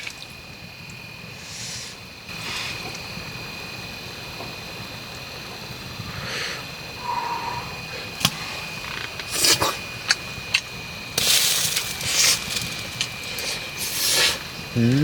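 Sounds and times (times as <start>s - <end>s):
hissing blowing or slurping: 7.0s - 8.4s.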